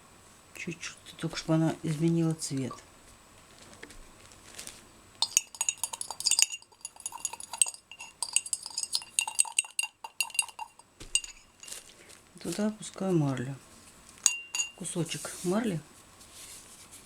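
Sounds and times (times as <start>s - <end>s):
utensil clinking against cup: 5.2s - 12.6s, 14.2s - 15.0s.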